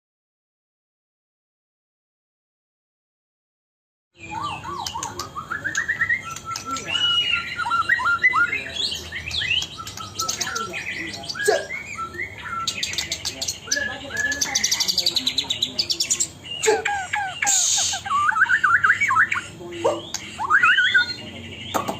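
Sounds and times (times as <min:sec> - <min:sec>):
songbird singing whistled notes: 0:04.2 - 0:21.9.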